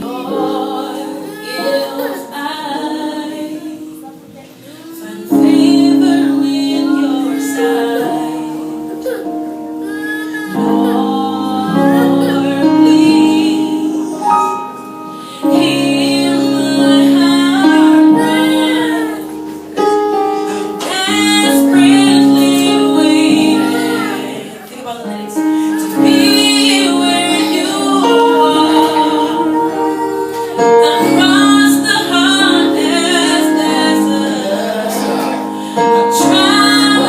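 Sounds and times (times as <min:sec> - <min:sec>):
held keyboard chords: 0:00.0 - 0:37.0
woman singing gospel: 0:00.0 - 0:37.0.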